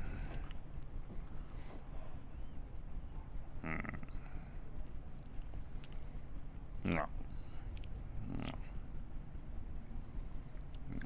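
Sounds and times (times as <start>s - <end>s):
low steady rumble: 0.0s - 11.0s.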